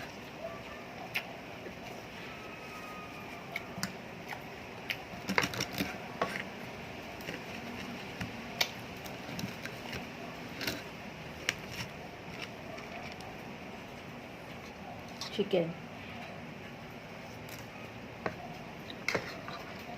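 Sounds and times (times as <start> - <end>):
chewing clicks and smacks: 1.0 - 1.9.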